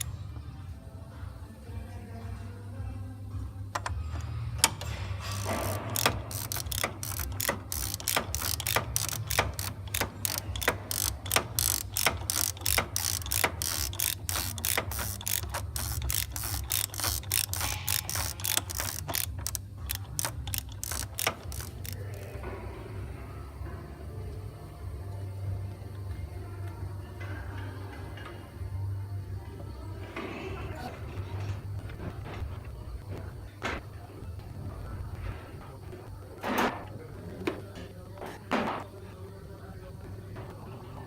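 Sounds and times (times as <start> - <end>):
steady low hum: 0.0 - 41.0
ratchet wrench clicking: 3.7 - 22.4.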